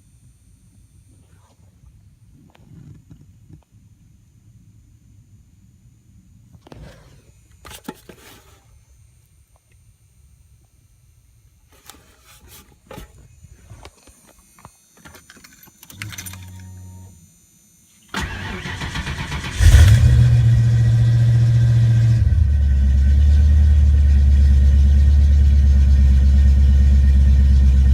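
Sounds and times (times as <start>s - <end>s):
fuel pump humming: 18.1s - 27.9s
car engine idling: 18.2s - 27.9s.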